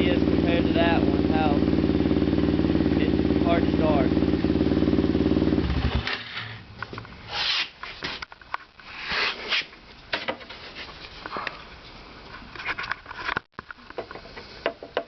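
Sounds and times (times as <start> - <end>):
quad engine idling: 0.0 - 6.1
clicks and scrapes from handling parts: 12.3 - 14.6.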